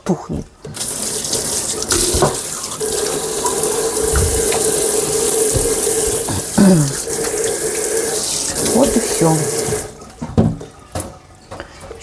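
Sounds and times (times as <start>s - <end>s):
tap water running into sink: 0.6s - 11.7s.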